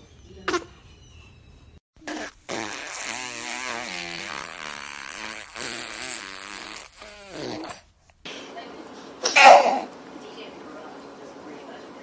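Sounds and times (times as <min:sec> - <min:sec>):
baby buzzing vocal noise: 0:02.0 - 0:07.8.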